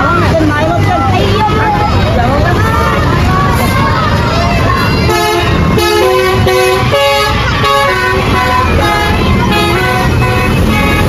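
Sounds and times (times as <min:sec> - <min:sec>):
vehicle rumble: 0:00.0 - 0:11.0
multi-tone vehicle horn tune: 0:05.1 - 0:11.0.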